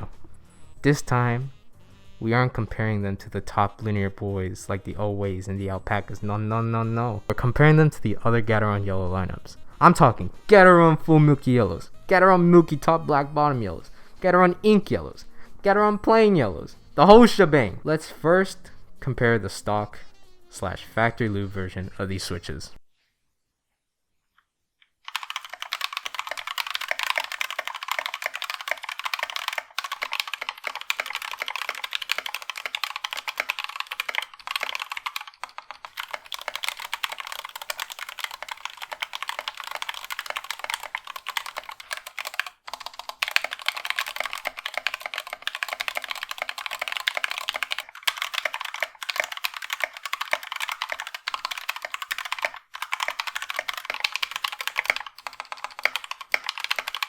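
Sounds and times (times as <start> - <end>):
fast typing on mechanical keyboard: 25.1 - 57.0.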